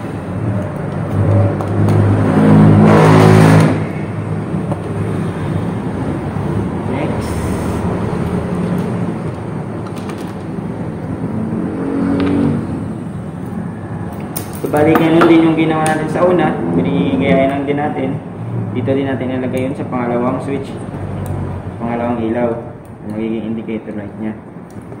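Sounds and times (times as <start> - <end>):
vehicle engine passing by: 0.0 - 9.7, 10.7 - 14.0
traffic noise: 0.0 - 25.0.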